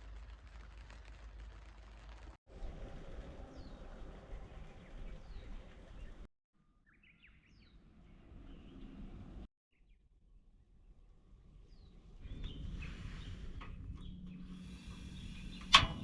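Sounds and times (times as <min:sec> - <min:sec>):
birds chirping: 0:03.5 - 0:09.1, 0:11.7 - 0:16.0.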